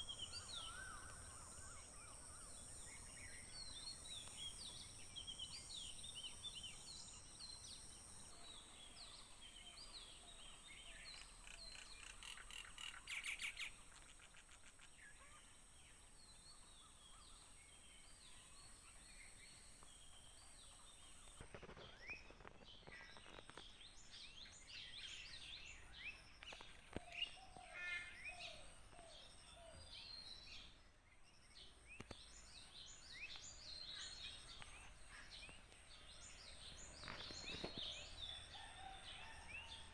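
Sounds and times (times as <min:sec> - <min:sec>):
small birds chirping: 0:00.0 - 0:28.6.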